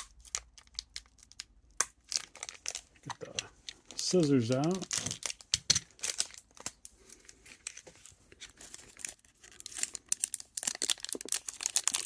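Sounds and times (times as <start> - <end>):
wrapper crinkling: 0.0 - 12.0
scissors cutting wrapper: 8.9 - 12.0.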